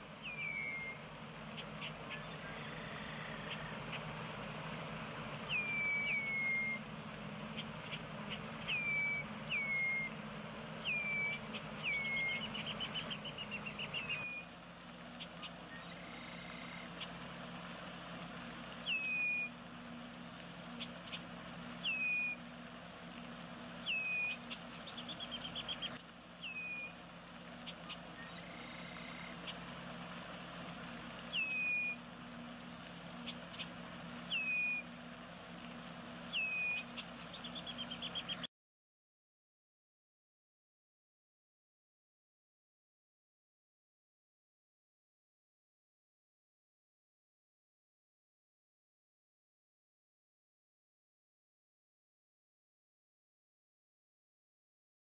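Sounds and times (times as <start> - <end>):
bird trills: 0.0 - 20.0, 20.6 - 22.6, 23.3 - 35.0, 35.6 - 38.5
bird calling: 0.0 - 38.5.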